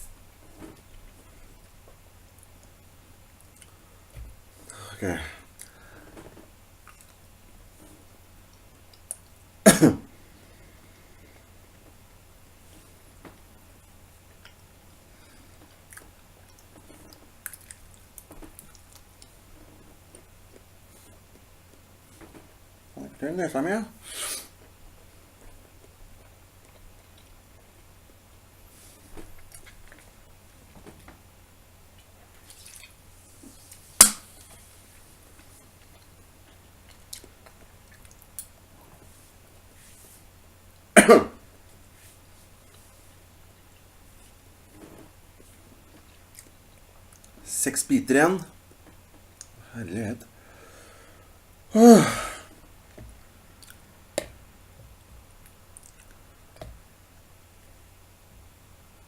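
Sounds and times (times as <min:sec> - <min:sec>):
person chewing: 0:36.8 - 0:38.5, 0:55.7 - 0:56.2.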